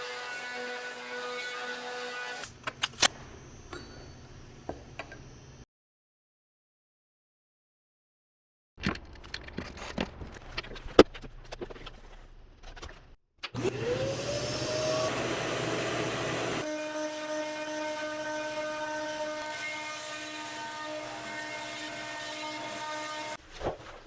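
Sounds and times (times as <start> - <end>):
vacuum motor whining: 13.6 - 16.6.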